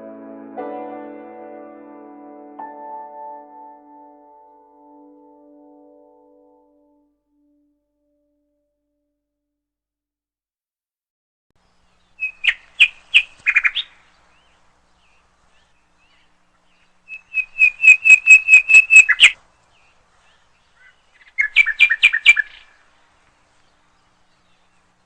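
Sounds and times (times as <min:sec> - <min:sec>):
bird singing sharp notes: 0:12.0 - 0:22.8.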